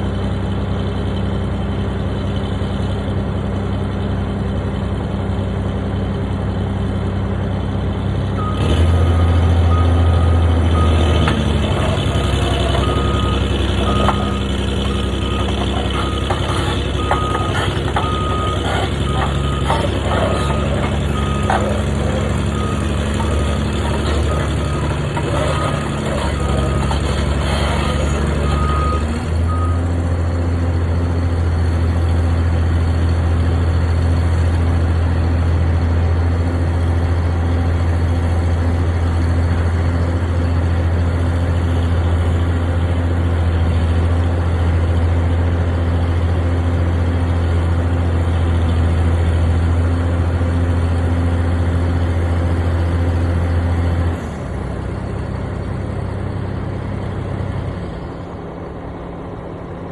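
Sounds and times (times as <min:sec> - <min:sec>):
heavy machine engine running: 0:00.0 - 0:59.9
reversing beeps: 0:08.4 - 0:29.9.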